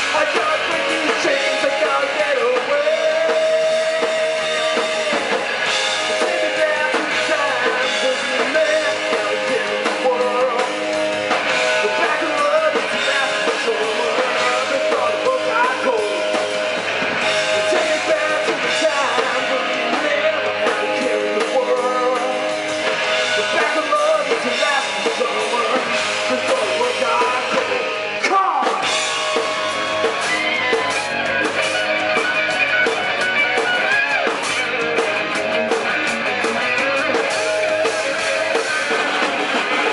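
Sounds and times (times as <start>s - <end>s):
person singing: 0.0s - 11.1s, 11.7s - 16.6s, 17.2s - 31.2s
drum kit: 0.0s - 39.9s
electric guitars: 0.0s - 39.9s.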